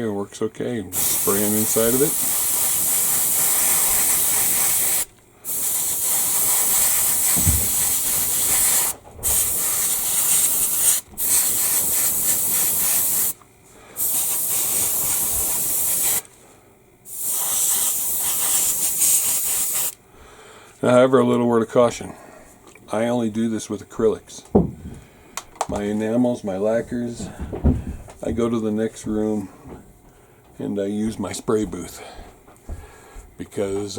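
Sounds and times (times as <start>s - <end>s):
airbrush spraying hiss: 0.9s - 13.4s, 14.0s - 16.3s, 17.1s - 20.0s.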